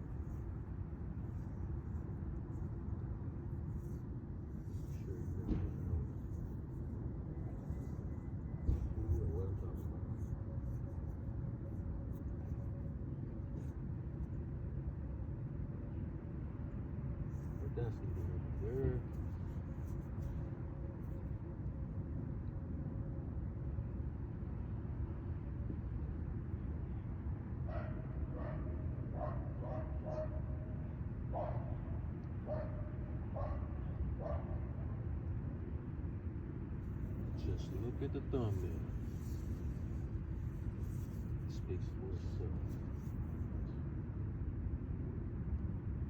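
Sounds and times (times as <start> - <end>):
faint hum: 0.0 - 46.0
steady low rumble: 0.0 - 46.0.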